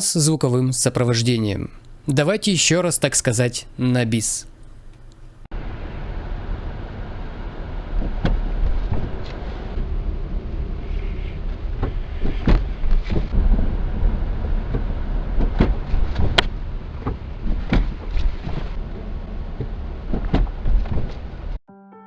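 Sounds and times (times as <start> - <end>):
low road rumble: 4.6 - 21.6
suspension knocks and thuds: 11.6 - 21.6.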